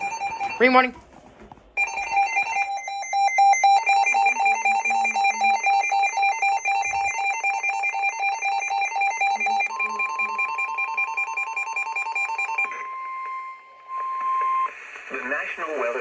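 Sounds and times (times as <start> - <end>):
steady alarm tone: 0.0 - 0.9, 1.8 - 13.9
two-pitch electronic beeping: 1.8 - 13.7.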